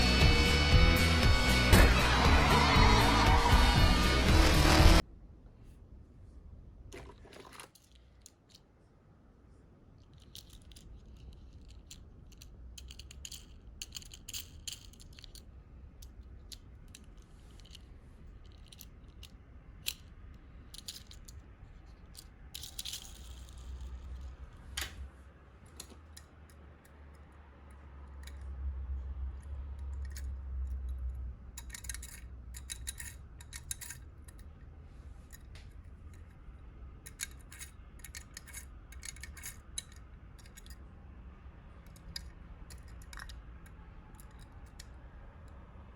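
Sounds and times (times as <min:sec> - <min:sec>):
toy cars clinking in a box: 0:10.0 - 0:24.4, 0:31.6 - 0:34.5, 0:37.0 - 0:40.8, 0:41.8 - 0:45.0.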